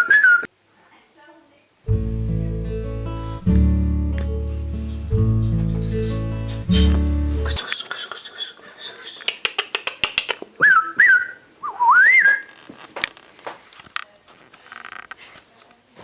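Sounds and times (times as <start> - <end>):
whistled notes: 0.0 - 0.5, 10.6 - 12.5
quick sharp clicks: 9.1 - 10.6.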